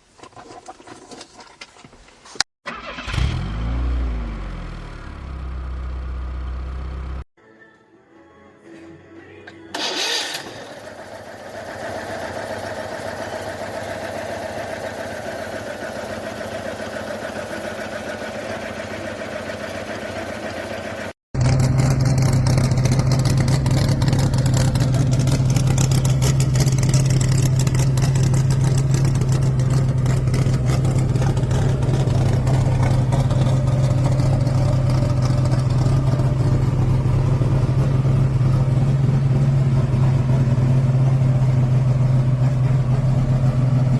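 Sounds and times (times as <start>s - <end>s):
car engine starting and idling: 2.6s - 7.2s, 9.7s - 43.9s
louder car engine idling: 10.5s - 43.9s.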